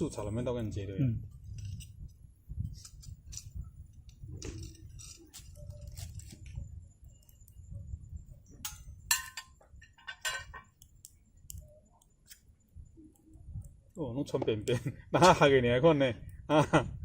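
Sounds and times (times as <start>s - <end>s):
metal utensils clinking: 9.1s - 10.6s.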